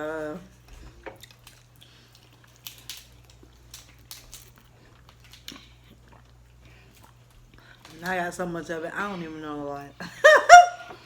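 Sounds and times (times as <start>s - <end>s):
low steady hum: 0.0s - 11.0s
shells clicking and cracking: 1.1s - 5.7s.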